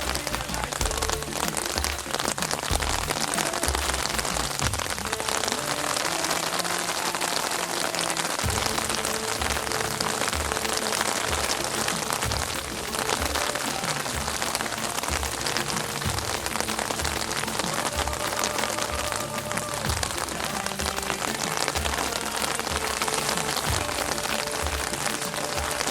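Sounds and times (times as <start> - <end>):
heavy rain falling: 0.0 - 25.9.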